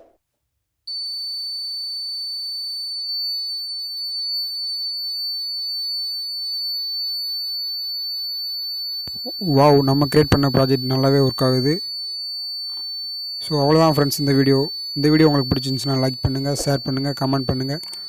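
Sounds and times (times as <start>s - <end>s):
high-pitched alarm buzzer tone: 0.9s - 18.0s.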